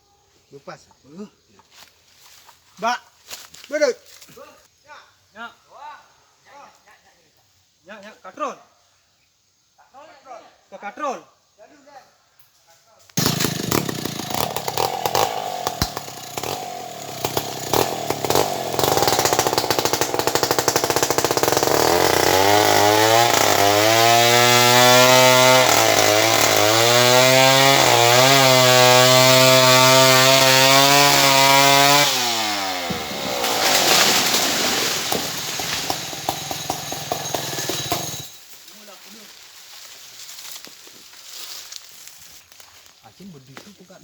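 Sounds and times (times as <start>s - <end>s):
chainsaw running: 13.2s - 38.4s.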